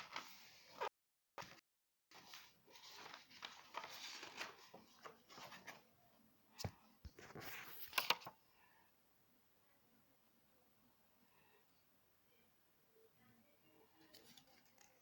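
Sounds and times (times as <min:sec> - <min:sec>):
rustling handling noise: 0:00.0 - 0:05.9.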